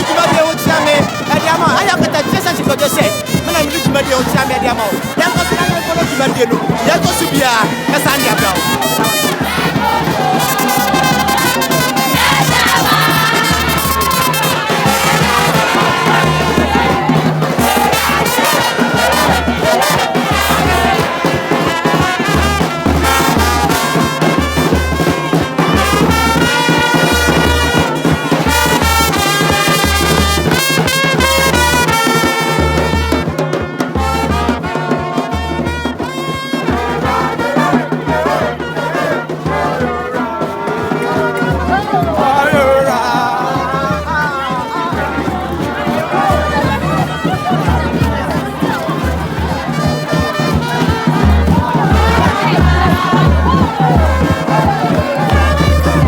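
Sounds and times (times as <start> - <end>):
loud music with heavy bass beat: 0.0 - 24.0.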